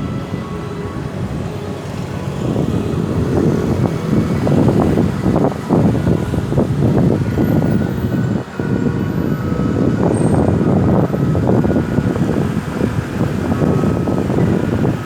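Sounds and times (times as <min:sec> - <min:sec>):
road vehicle rumble: 0:00.0 - 0:15.0.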